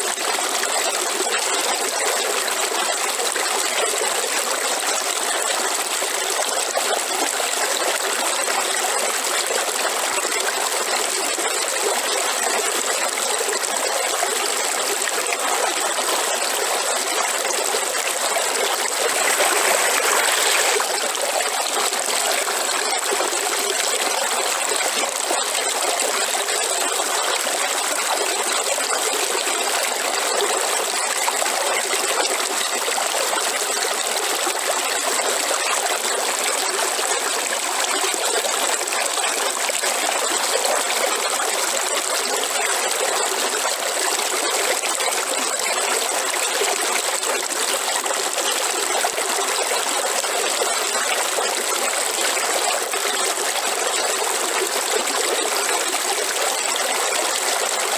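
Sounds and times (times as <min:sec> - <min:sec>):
river water flowing: 0:14.8 - 0:30.0.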